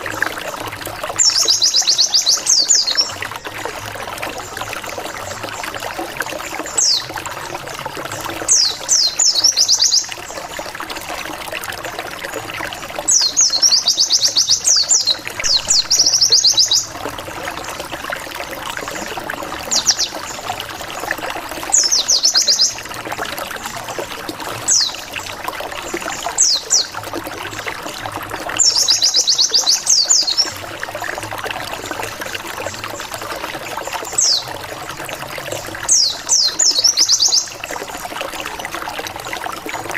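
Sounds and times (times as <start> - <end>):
water trickling: 0.0 - 39.9
bird song with fast trills: 1.2 - 3.2, 6.7 - 7.1, 8.4 - 10.4, 13.1 - 17.0, 21.7 - 22.8, 24.7 - 25.2, 28.6 - 30.6, 34.1 - 34.6, 35.7 - 37.7.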